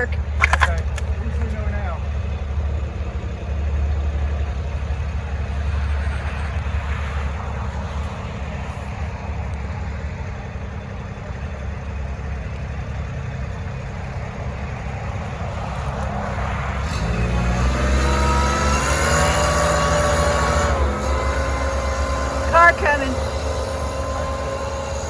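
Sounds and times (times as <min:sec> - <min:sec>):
steady low rumble: 0:00.0 - 0:18.1
vehicle engine revving up: 0:00.0 - 0:25.0.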